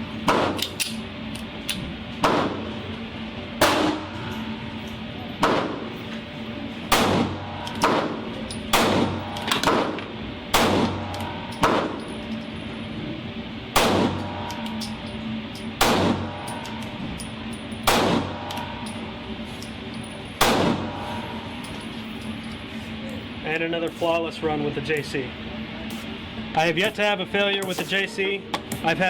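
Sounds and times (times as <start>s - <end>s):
pistol shots: 0.3s - 0.6s, 2.2s - 2.7s, 3.6s - 4.2s, 5.4s - 5.9s, 6.9s - 12.0s, 13.7s - 14.5s, 15.8s - 16.4s, 17.8s - 18.6s, 20.4s - 21.0s.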